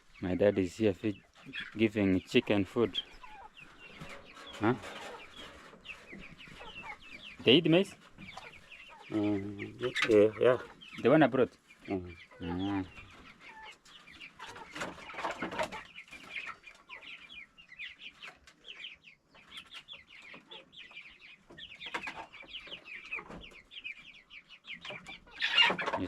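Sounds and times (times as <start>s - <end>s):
chickens clucking: 0.0s - 26.0s.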